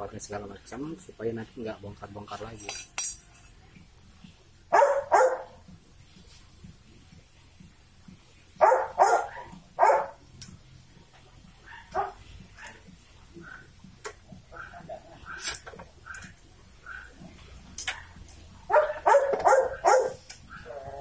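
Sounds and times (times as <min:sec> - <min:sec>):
dog barking: 0:04.7 - 0:05.6, 0:08.6 - 0:10.2, 0:11.6 - 0:12.8, 0:13.4 - 0:13.7, 0:14.5 - 0:17.2, 0:17.9 - 0:20.8.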